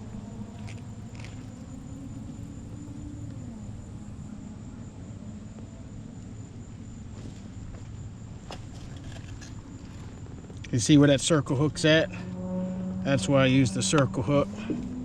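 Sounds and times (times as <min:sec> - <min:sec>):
motor humming: 0:00.0 - 0:06.8.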